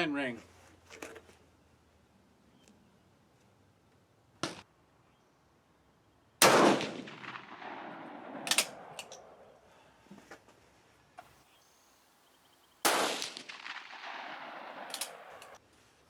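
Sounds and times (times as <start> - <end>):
rifle shot with echo: 6.4 - 9.6, 12.8 - 15.6
sharp metallic clicks: 8.4 - 9.3, 14.6 - 15.6.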